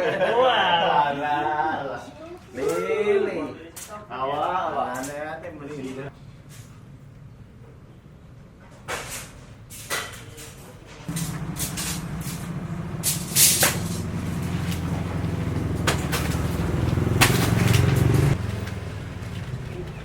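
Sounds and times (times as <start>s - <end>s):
engine running steadily: 11.1s - 20.0s.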